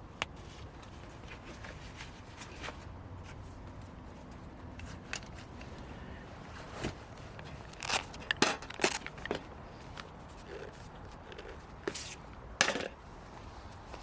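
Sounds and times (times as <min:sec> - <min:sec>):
steady low rumble: 0:02.9 - 0:07.8
small objects clicking and rustling: 0:07.4 - 0:13.0.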